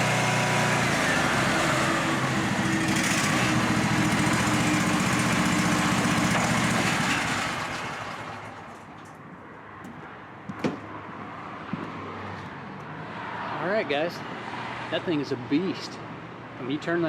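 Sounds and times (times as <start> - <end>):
leaf blower roaring: 0.0 - 8.9.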